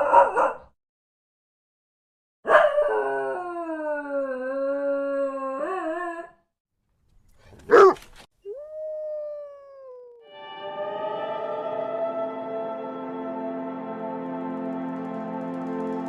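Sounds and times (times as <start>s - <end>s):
dog barking: 0.0s - 0.7s, 2.5s - 2.8s, 7.4s - 8.2s
dog howling: 2.5s - 6.4s, 7.6s - 10.2s.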